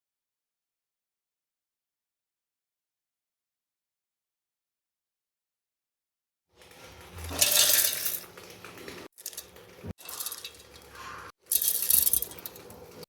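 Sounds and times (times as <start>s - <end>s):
metal utensils clattering: 6.6s - 13.0s.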